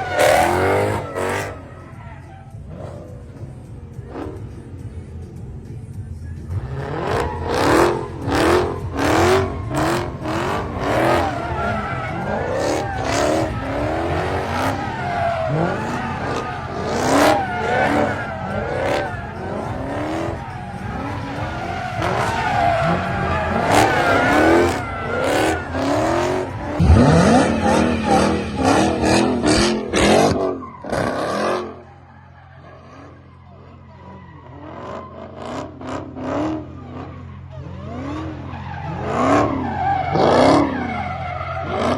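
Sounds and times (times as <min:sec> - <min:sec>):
car engine revving: 0:00.0 - 0:41.9
tires squealing: 0:00.0 - 0:41.9.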